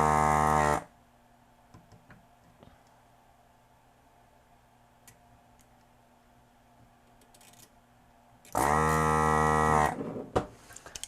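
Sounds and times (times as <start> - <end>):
vacuum pump buzzing: 0.0 - 0.9, 8.5 - 10.0.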